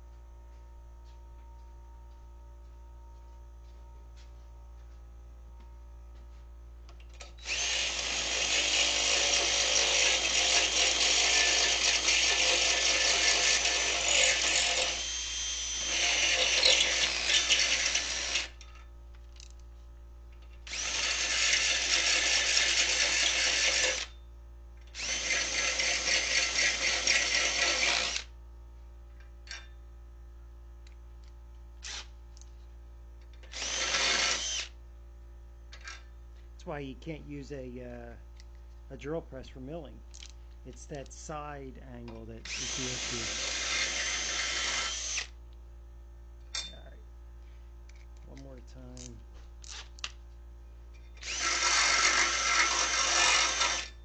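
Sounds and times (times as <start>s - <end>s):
drill cutting into steel: 7.4s - 18.6s, 20.7s - 24.2s, 24.9s - 28.3s, 31.8s - 32.1s, 33.4s - 34.7s, 42.4s - 45.4s, 51.2s - 54.0s.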